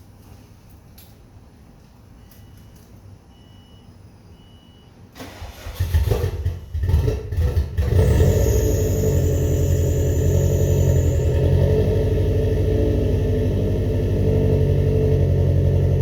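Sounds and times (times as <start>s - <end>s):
car engine cranking and running: 5.2s - 16.0s
high whine: 8.0s - 13.4s.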